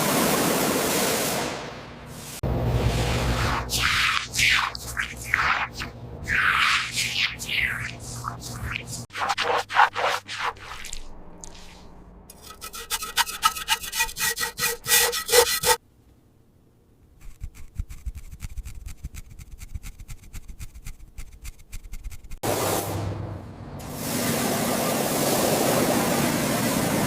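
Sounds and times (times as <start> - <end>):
rasping strokes on a surface: 3.4 - 11.0, 12.3 - 15.8.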